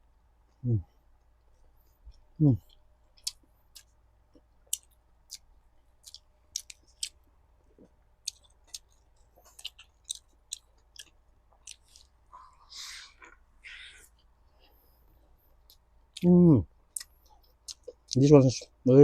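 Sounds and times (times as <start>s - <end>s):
chewing with wet mouth clicks: 1.9s - 12.2s, 16.9s - 18.8s.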